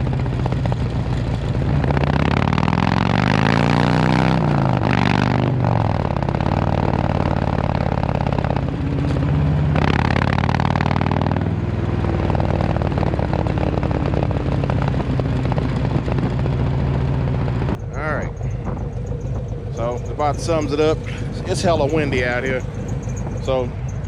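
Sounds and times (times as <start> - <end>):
motorcycle engine idling and revving: 0.0 - 24.0
wind buffeting microphone: 12.1 - 24.0.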